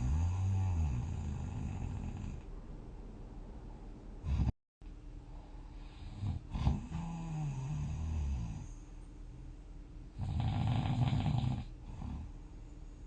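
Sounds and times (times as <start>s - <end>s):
person snoring: 0.0s - 2.4s, 6.0s - 8.7s, 10.2s - 12.3s.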